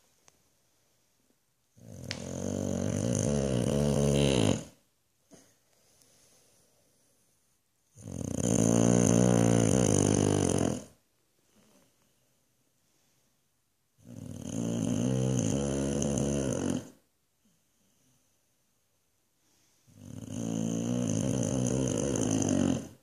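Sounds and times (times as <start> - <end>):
dog snoring loudly: 1.8 - 4.8, 7.9 - 11.0, 14.0 - 17.0, 19.9 - 23.0.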